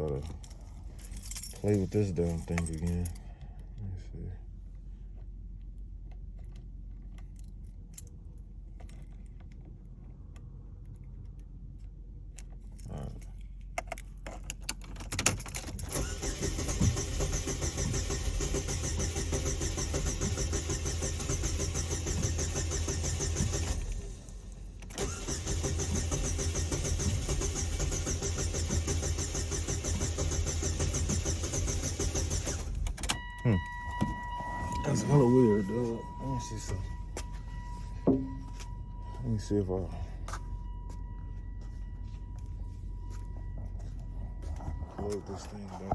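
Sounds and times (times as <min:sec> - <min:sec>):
light clicks and handling noises: 0:00.0 - 0:04.0
car engine cranking and starting: 0:00.0 - 0:45.9
car engine running: 0:16.0 - 0:45.9.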